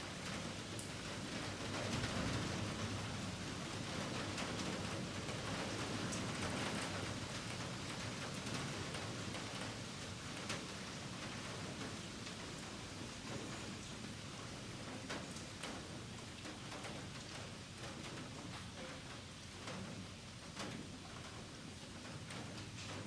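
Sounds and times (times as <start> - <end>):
raindrops ticking nearby: 0.1 - 23.0.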